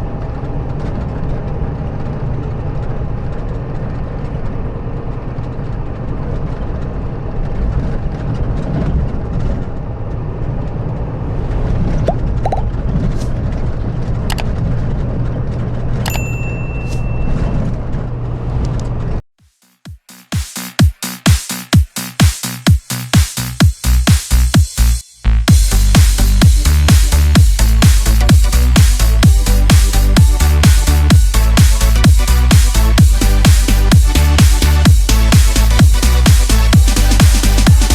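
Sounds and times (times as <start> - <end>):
diesel engine humming: 23.9 - 37.9.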